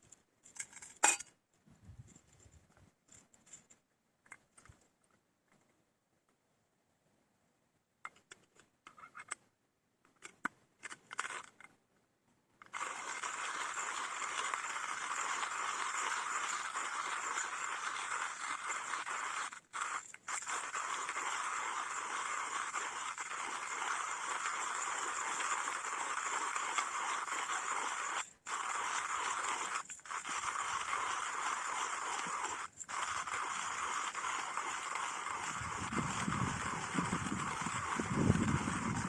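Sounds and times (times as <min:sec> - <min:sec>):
hand coffee grinder crunching beans: 0:10.8 - 0:11.7, 0:12.6 - 0:39.0.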